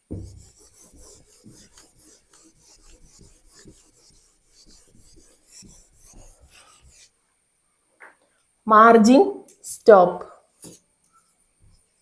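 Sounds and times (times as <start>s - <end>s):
pen scratching in strokes: 0.1s - 7.2s.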